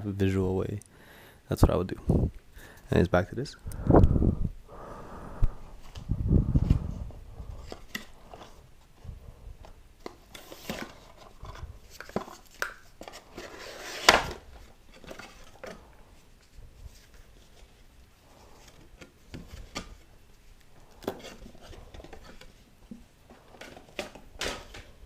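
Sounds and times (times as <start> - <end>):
cardboard and paper rustling: 9.6 - 25.0.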